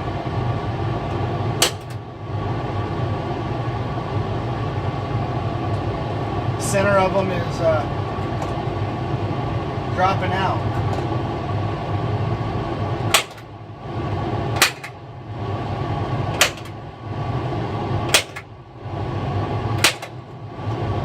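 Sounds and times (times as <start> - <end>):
sharp click: 1.6 - 2.0, 14.6 - 15.0, 16.4 - 16.8, 18.1 - 18.5, 19.8 - 20.2.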